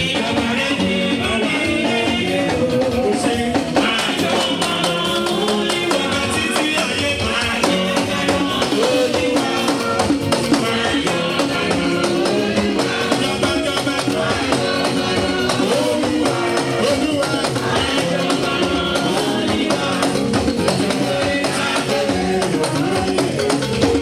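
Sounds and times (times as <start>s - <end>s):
church praise music: 0.0s - 24.0s
people singing: 0.0s - 24.0s
shaken percussion: 0.0s - 24.0s.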